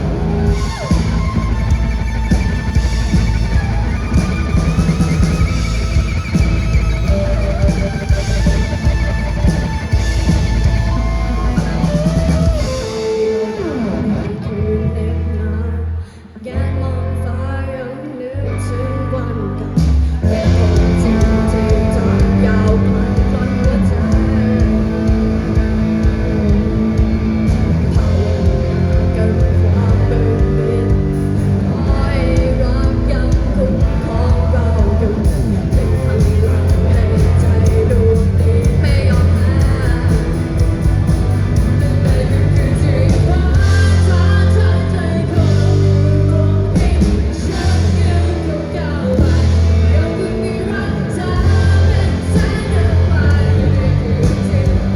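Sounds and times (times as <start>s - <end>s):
guitar: 0.0s - 54.9s
live rock band: 0.0s - 54.9s
person singing: 0.0s - 54.9s.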